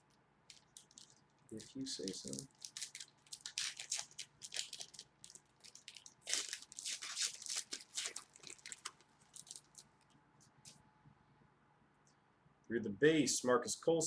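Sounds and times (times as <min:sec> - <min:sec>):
card packs crinkling and rustling: 0:00.5 - 0:10.0.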